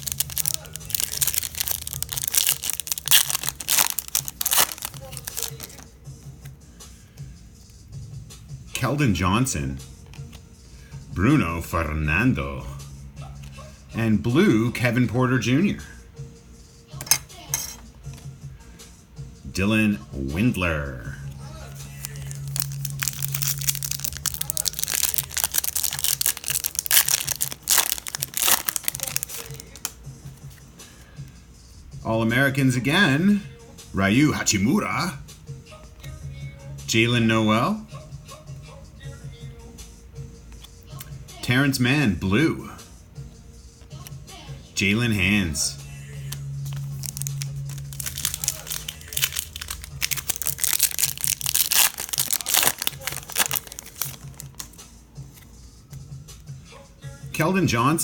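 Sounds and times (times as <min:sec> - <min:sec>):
plastic wrapper crinkling and tearing: 0:00.0 - 0:05.9, 0:21.9 - 0:30.0, 0:46.3 - 0:54.7.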